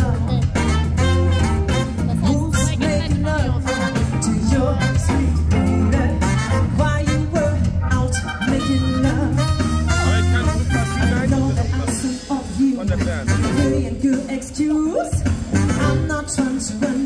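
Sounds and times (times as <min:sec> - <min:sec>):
upbeat music with singing: 0:00.0 - 0:17.0.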